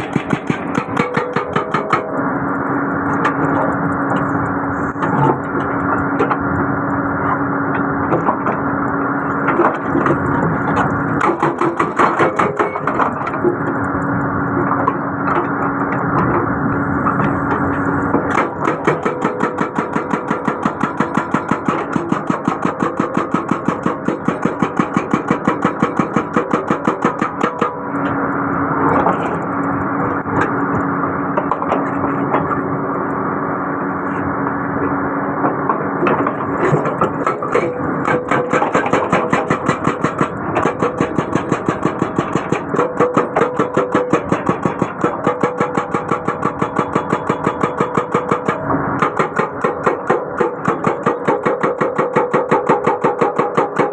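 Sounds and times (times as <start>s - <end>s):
hydraulic breaker hammering: 0.0s - 2.4s, 9.3s - 16.4s, 17.0s - 30.7s, 35.4s - 53.9s
excavator engine running: 0.0s - 53.9s.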